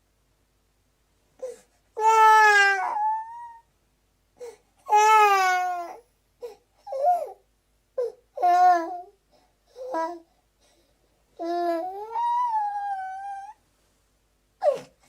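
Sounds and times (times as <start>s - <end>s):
baby crying: 1.4s - 3.7s, 4.4s - 7.4s, 11.4s - 13.6s, 14.6s - 14.9s.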